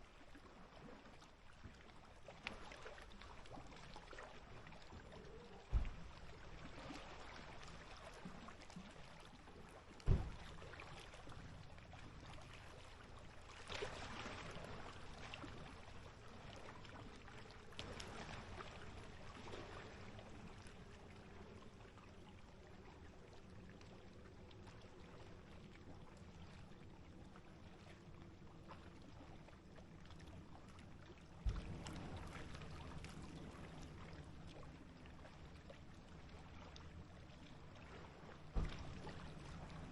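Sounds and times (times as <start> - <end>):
small waves lapping: 0.0 - 39.9
water splashing: 2.3 - 22.1, 37.7 - 39.9.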